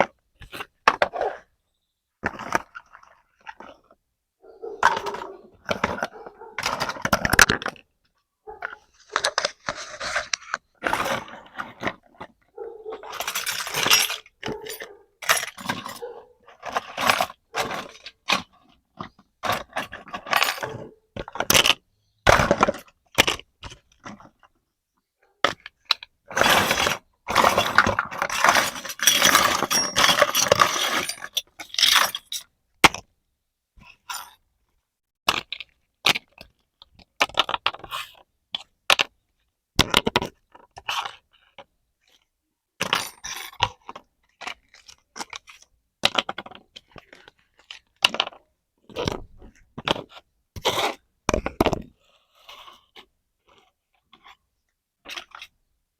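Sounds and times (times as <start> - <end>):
rustling: 8.5 - 15.0.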